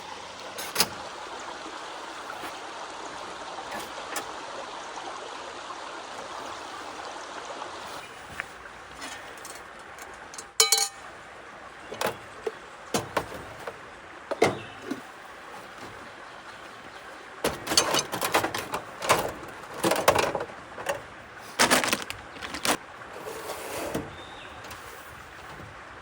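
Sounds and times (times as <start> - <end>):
gear knocking and clinking: 17.4 - 21.0.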